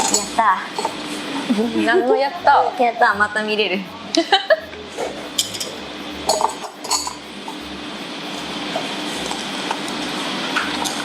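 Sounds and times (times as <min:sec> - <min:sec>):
tableware clinking: 0:00.0 - 0:01.0, 0:04.9 - 0:07.6
kitchen ventilation fan: 0:00.0 - 0:11.0.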